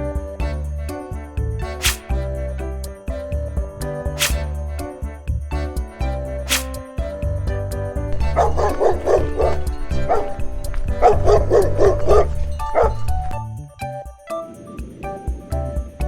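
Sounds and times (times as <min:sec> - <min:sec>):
background music: 0:00.0 - 0:16.0
dog barking: 0:08.2 - 0:13.4.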